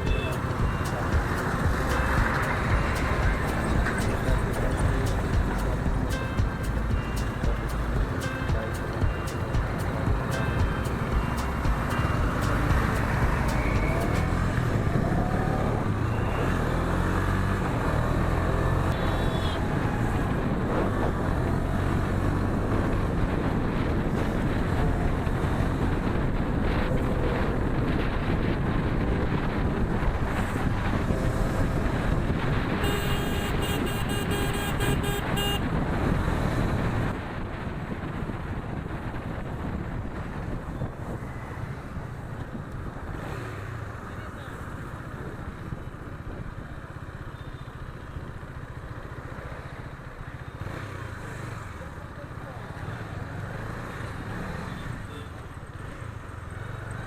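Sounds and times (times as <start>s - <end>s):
motorcycle horn: 0.0s - 14.1s, 19.0s - 19.7s, 32.6s - 35.7s
motorcycle engine running: 0.0s - 15.9s
road and wind noise: 0.0s - 57.0s.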